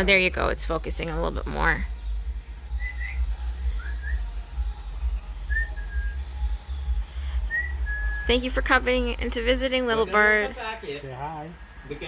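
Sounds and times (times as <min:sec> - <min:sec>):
steady low rumble: 0:00.0 - 0:10.8
whistled notes: 0:00.6 - 0:04.4, 0:05.4 - 0:08.6.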